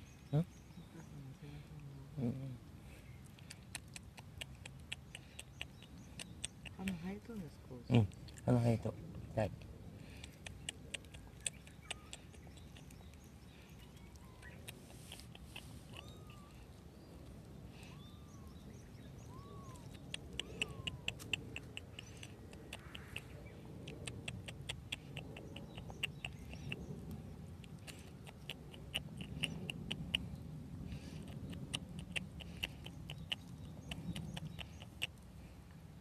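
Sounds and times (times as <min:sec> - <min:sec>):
kittens chewing with sharp clicks: 0:02.9 - 0:07.2, 0:09.6 - 0:35.9
kitten calls: 0:13.8 - 0:16.8, 0:17.7 - 0:18.6, 0:19.2 - 0:23.3.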